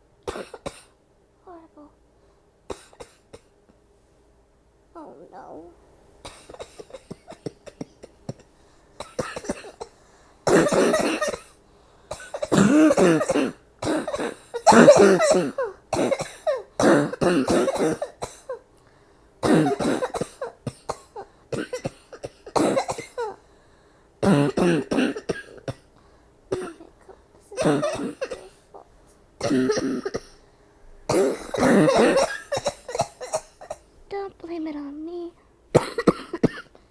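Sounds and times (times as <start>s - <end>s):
woman coughing hard: 0.3s - 1.0s, 2.7s - 3.5s, 6.2s - 18.7s, 19.4s - 23.4s, 24.2s - 25.9s, 26.5s - 28.8s, 29.4s - 30.4s, 31.1s - 33.9s, 35.7s - 36.9s.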